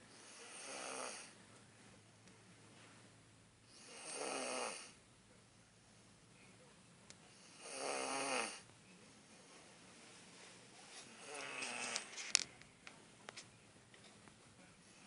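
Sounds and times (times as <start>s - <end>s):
person snoring: 0.1s - 1.3s, 3.7s - 5.0s, 7.4s - 8.6s, 11.1s - 12.0s.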